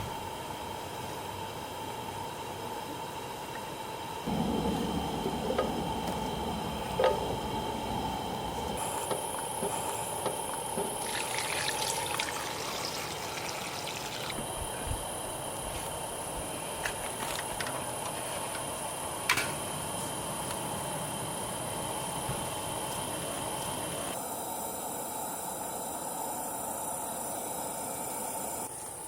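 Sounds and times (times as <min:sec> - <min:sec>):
constant high whine: 0:00.0 - 0:29.0
water trickling: 0:09.4 - 0:14.4.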